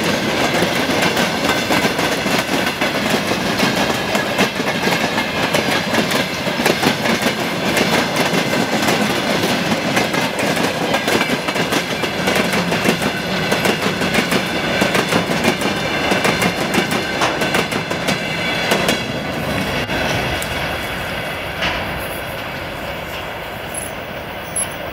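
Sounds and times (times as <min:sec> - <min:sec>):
train wheels clacking over rail joints: 0:00.0 - 0:24.9.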